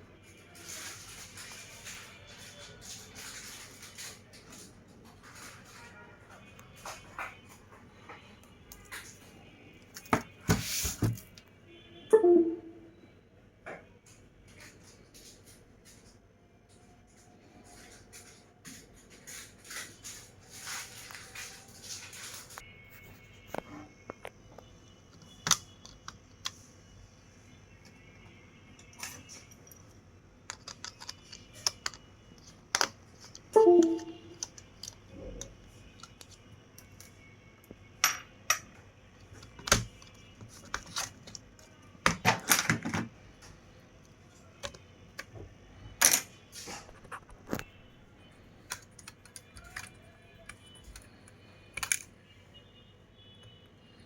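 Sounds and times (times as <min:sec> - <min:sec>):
small tools clicking and knocking: 0:28.8 - 0:33.5, 0:48.7 - 0:51.2, 0:51.8 - 0:52.1.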